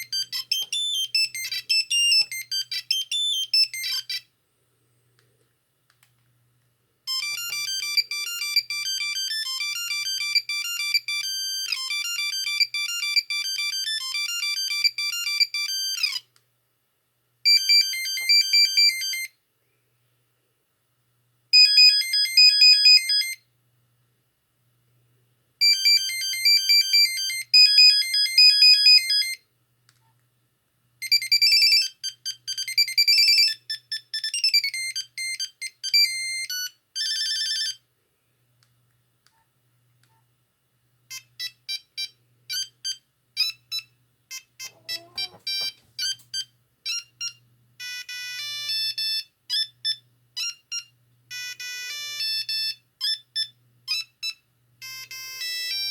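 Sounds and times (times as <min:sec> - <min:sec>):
monophonic phone ringtones: 0:00.0 - 0:04.3, 0:07.1 - 0:16.2, 0:17.5 - 0:19.3, 0:25.6 - 0:29.4, 0:31.0 - 0:37.8, 0:41.1 - 0:55.9.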